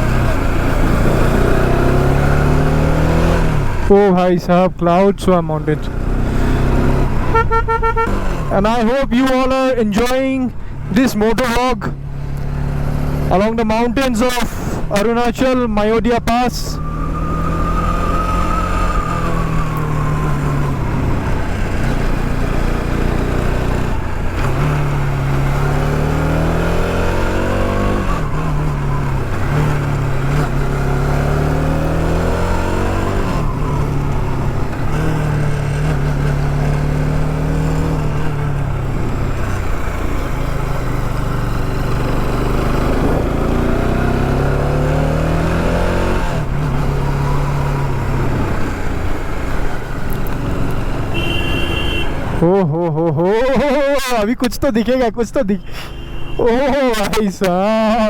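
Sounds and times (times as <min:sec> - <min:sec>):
motorcycle engine revving: 0:00.0 - 0:53.8.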